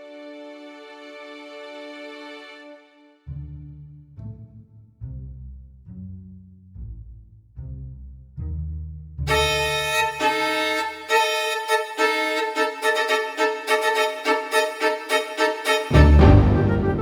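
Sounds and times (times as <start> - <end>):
background music melody: 9.3 - 17.0.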